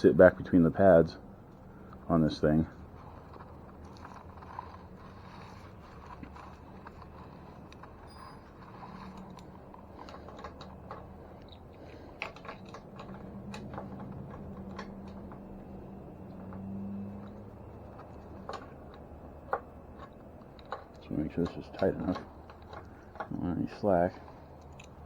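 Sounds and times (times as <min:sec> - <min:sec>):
faint low hum: 0:00.0 - 0:25.0
hand tools clicking and tapping: 0:02.8 - 0:25.0.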